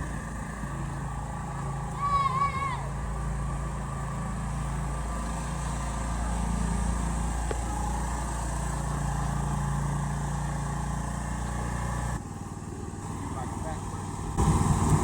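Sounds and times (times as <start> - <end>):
riding lawn mower engine running: 0.0 - 15.0.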